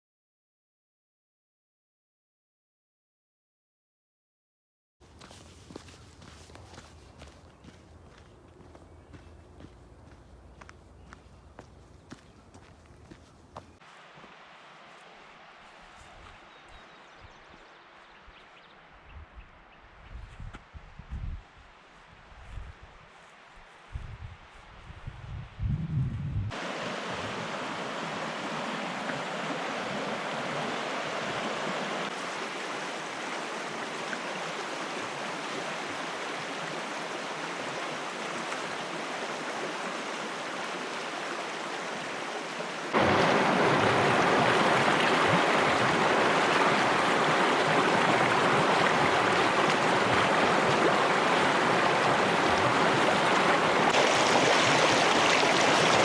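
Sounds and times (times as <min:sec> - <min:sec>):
running water rushing: 0:05.0 - 0:18.2, 0:26.5 - 0:56.0.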